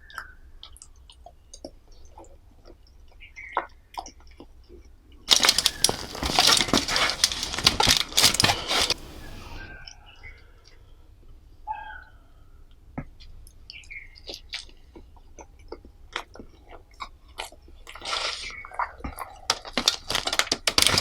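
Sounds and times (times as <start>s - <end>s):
loud dense crackling: 5.3s - 9.9s.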